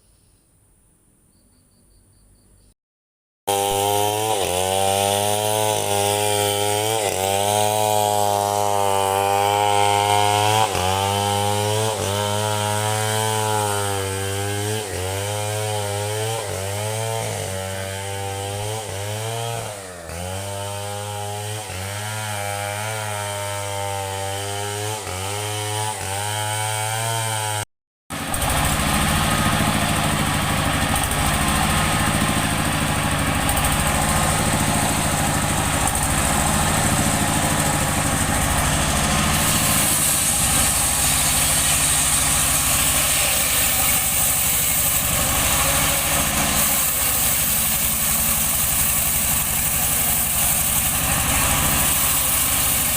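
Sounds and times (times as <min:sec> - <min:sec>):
chainsaw cutting log: 0:03.5 - 0:52.9
engine idling: 0:28.2 - 0:52.9.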